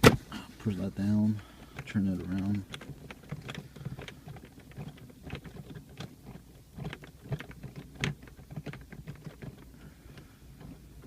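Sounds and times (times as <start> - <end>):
plastic trim clicking and knocking: 1.7 - 9.7.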